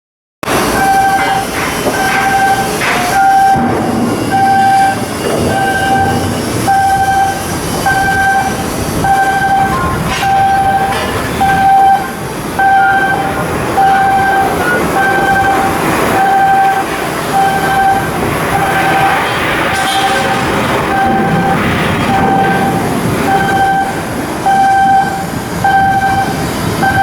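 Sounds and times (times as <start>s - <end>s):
shipyard machinery noise: 0.4s - 27.0s
electronic warning beeper: 0.7s - 27.0s.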